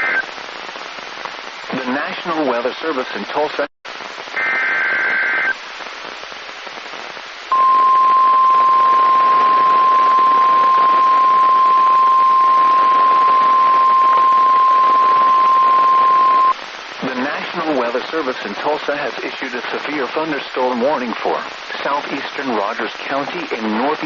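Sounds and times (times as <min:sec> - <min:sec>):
radio static hiss: 0:00.0 - 0:24.0
steady warning alarm tone: 0:07.5 - 0:16.5.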